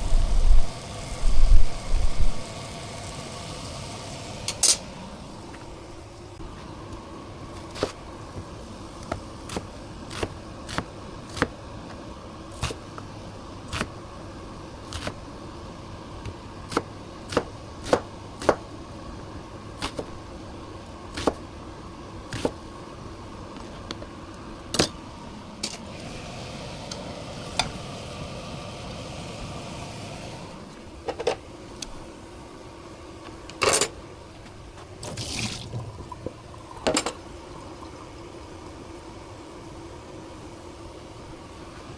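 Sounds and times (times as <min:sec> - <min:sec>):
steady hum: 0:00.0 - 0:41.9
water running: 0:35.0 - 0:39.0.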